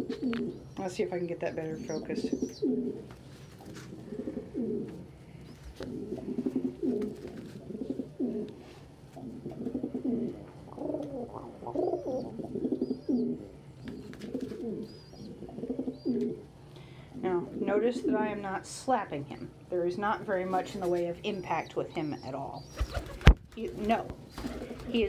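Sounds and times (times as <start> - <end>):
pigeon cooing: 0.0 - 0.8, 1.8 - 16.5.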